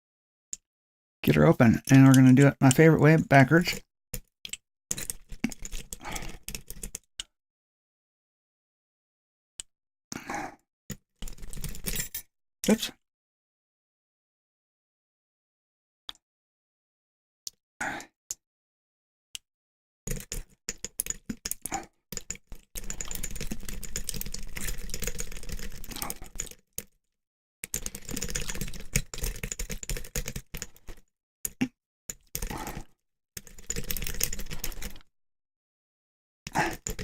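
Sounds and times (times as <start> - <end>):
lock pick clicking and scraping: 20.1 - 26.6, 27.6 - 35.0, 36.5 - 37.0.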